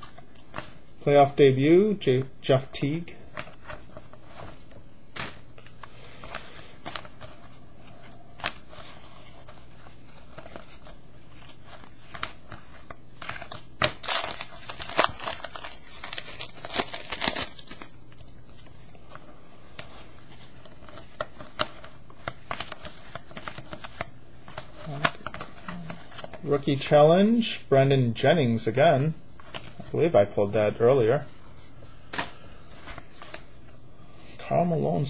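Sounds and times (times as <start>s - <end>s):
cards and wrappers rustling: 2.8s - 27.0s, 31.1s - 33.8s.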